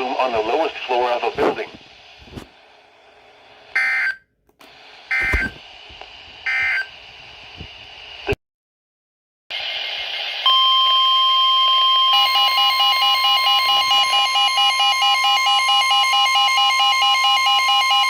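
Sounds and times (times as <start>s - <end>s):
pulsing multi-pitched beeping alarm: 10.5s - 18.0s.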